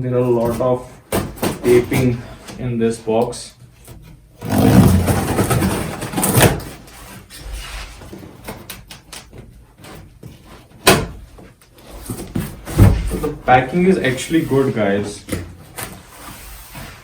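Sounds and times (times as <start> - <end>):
cardboard scraping and rustling: 3.9 - 17.0.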